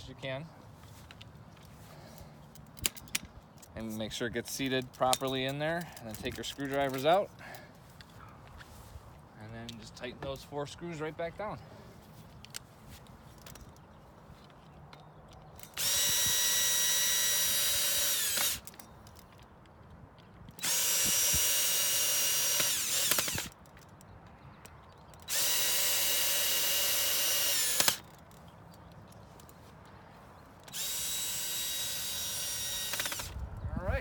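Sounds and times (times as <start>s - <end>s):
power drill motor whine: 15.6s - 18.8s, 20.6s - 23.6s, 25.2s - 28.1s, 30.7s - 33.9s.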